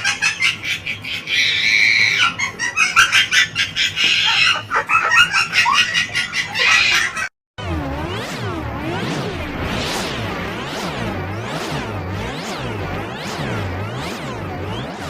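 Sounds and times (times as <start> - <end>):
birds chirping and squawking: 0.0 - 7.3.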